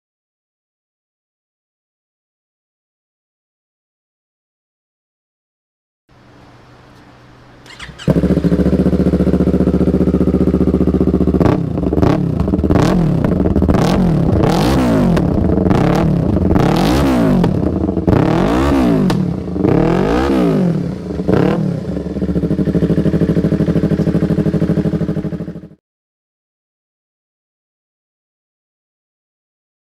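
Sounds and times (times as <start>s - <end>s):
motorcycle engine idling and revving: 6.1s - 25.8s.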